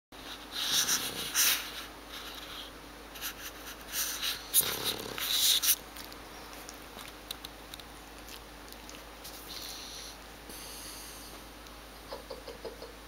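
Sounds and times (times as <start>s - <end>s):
pet snoring: 4.5s - 5.4s.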